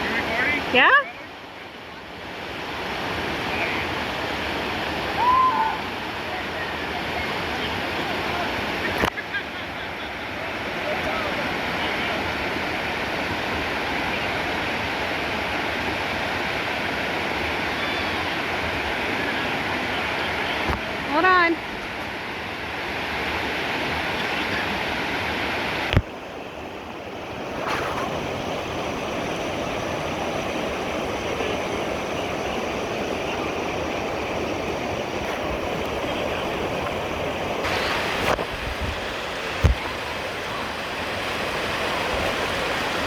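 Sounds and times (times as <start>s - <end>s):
rushing water: 0.0s - 43.0s.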